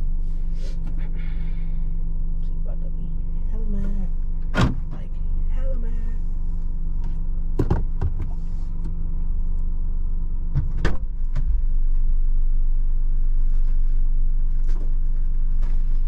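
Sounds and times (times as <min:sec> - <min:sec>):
car engine idling: 0:00.0 - 0:16.0
car door shutting: 0:04.4 - 0:04.9, 0:10.5 - 0:11.5.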